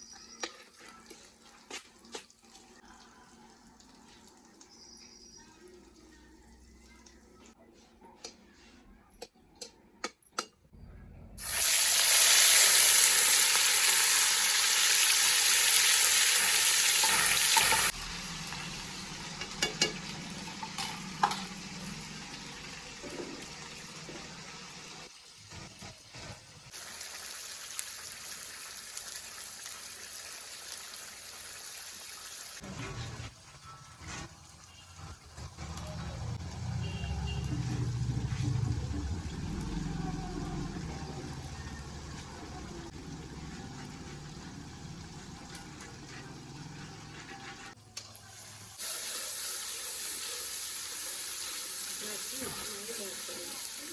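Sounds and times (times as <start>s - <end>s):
food sizzling in hot oil: 11.4s - 32.7s, 47.6s - 53.9s.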